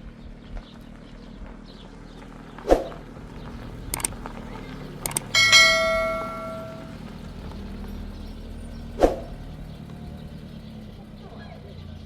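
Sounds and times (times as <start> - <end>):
ringing metallic strike: 5.1 - 7.0.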